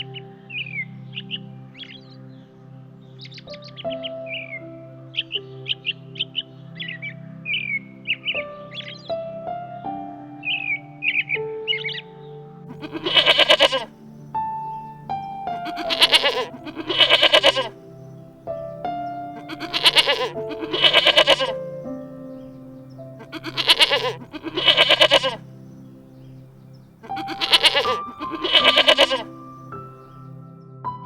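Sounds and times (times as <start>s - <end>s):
background music: 0.0s - 31.0s
quavering bleating calls: 12.7s - 18.3s, 19.4s - 21.8s, 23.2s - 25.5s, 27.0s - 30.2s.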